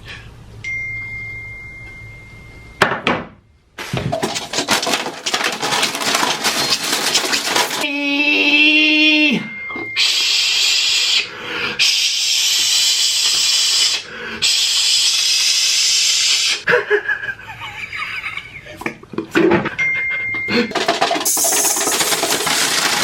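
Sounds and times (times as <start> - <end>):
man hissing: 10.0 - 16.6.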